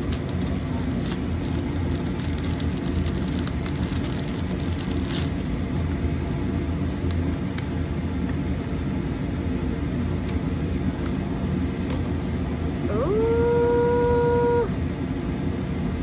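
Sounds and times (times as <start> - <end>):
packaging crinkling and clicking: 0.0 - 5.9
steady low rumble: 0.0 - 16.0.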